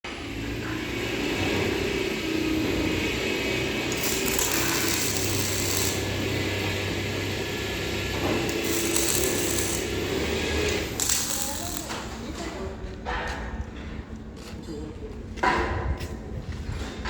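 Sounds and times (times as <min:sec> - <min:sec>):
power tool running on metal: 0:00.1 - 0:12.4.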